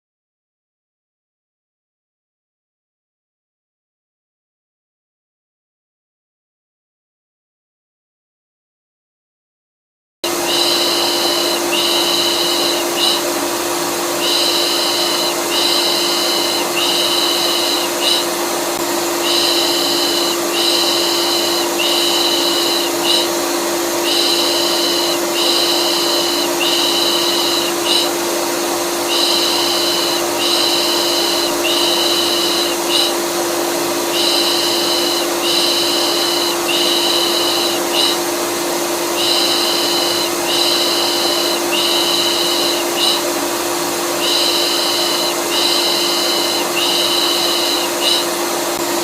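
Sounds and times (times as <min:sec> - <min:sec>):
vacuum cleaner humming: 0:10.2 - 0:49.0.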